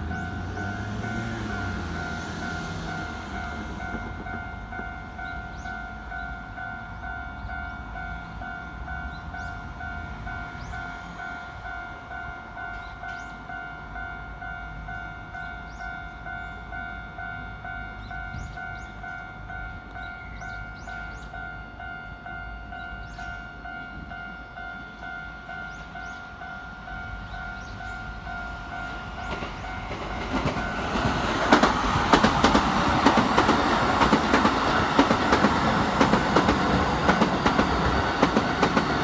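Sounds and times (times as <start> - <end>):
electric train running: 0.0 - 7.2, 24.6 - 39.0.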